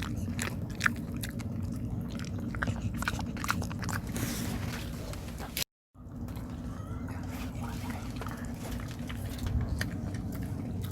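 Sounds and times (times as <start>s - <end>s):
dog chewing wetly: 0.0s - 4.8s, 7.5s - 10.9s
steady low hum: 0.0s - 10.9s.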